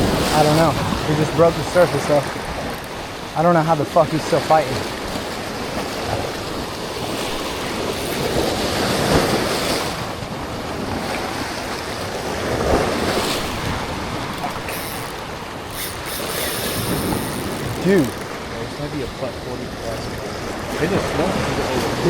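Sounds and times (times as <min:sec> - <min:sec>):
ocean surf on rocks: 0:00.0 - 0:22.0
wind buffeting microphone: 0:04.9 - 0:22.0.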